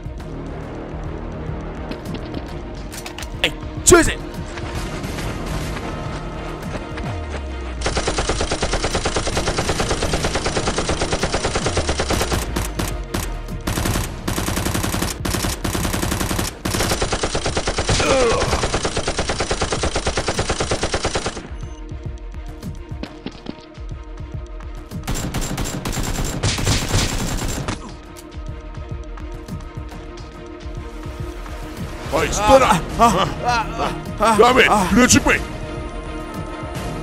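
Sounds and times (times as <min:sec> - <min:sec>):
automatic gunfire bursts: 0:07.8 - 0:13.0, 0:13.7 - 0:21.5, 0:25.1 - 0:27.7.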